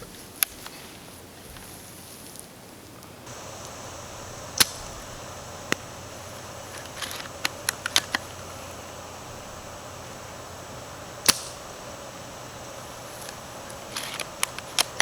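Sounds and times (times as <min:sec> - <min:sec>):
airsoft rifle firing snap: 0:03.3 - 0:15.0
rifle clicks: 0:03.3 - 0:15.0.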